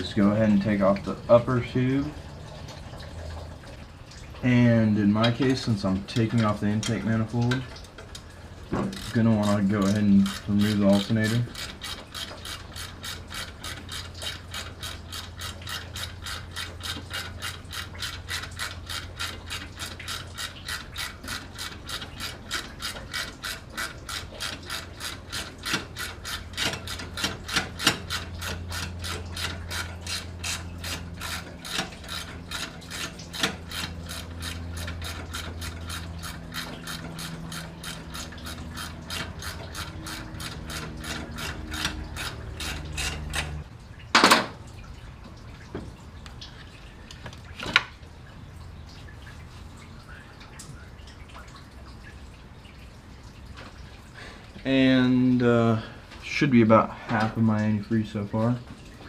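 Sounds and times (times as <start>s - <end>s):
low steady hum: 0.0s - 59.0s
ratchet wrench clicking: 8.9s - 19.3s.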